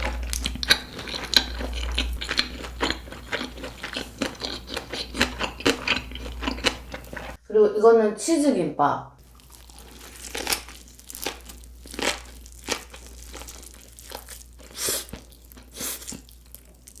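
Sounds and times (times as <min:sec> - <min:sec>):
crisp food being chewed: 0:00.0 - 0:07.4, 0:09.2 - 0:17.0.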